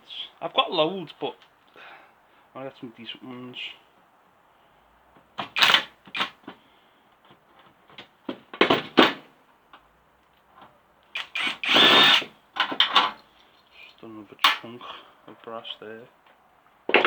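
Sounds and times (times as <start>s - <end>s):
impact driver bursts: 5.4s - 6.4s, 11.1s - 13.2s
clicks and knocks of metal parts: 12.6s - 14.7s.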